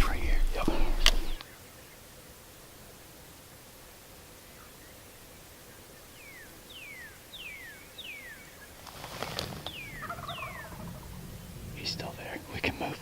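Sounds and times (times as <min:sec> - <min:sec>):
songbird whistling: 0:06.2 - 0:08.7, 0:09.7 - 0:10.8
rustling: 0:08.7 - 0:12.5.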